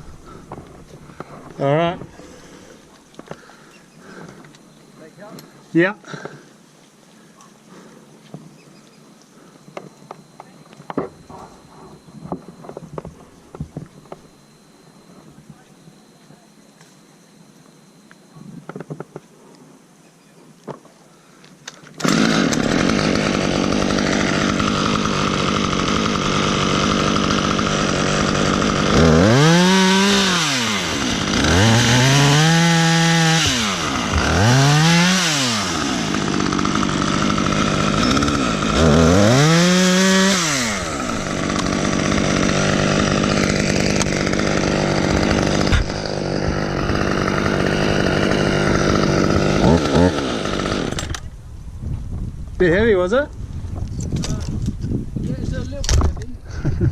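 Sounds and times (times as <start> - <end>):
chainsaw revving: 0.0 - 4.4, 22.0 - 51.3.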